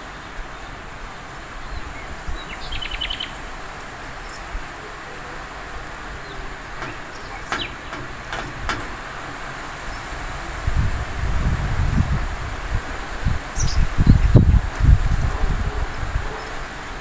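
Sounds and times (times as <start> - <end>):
strong wind blowing: 0.0 - 17.0
bird trilling chirps: 1.6 - 8.1, 13.6 - 14.4
sharp clicks: 6.8 - 9.2.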